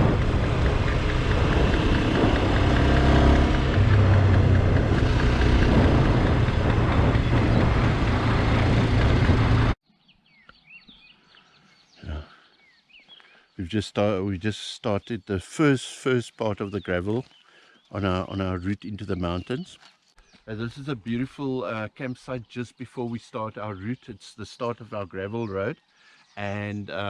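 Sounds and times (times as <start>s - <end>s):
motorcycle engine running: 0.0s - 9.8s
wind rushing on microphone: 0.0s - 9.8s
faint bird chirps: 9.9s - 15.4s, 16.1s - 27.0s.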